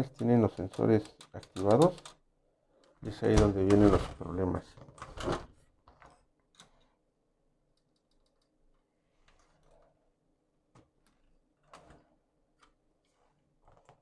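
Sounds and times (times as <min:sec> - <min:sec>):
faint clicks and taps: 0:00.1 - 0:02.2.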